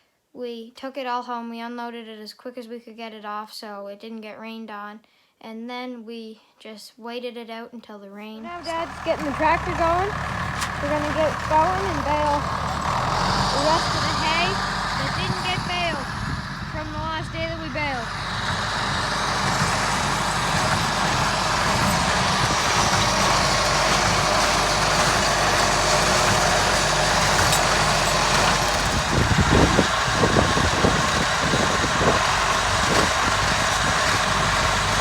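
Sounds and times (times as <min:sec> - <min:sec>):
tractor engine running: 0:08.4 - 0:35.0.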